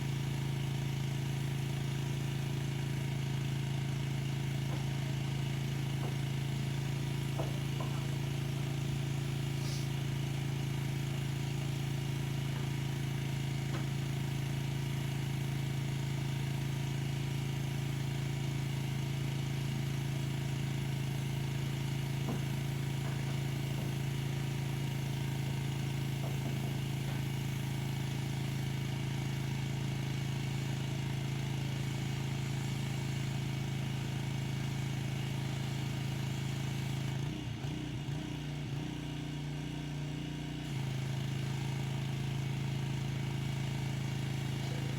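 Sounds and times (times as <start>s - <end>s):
pressure washer motor hum: 0.0s - 38.6s, 39.9s - 44.9s
spray hissing: 9.5s - 10.0s.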